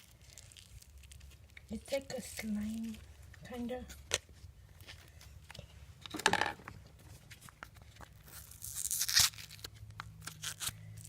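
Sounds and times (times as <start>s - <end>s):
foam beads clicking and crinkling: 0.0s - 4.2s, 7.5s - 11.0s.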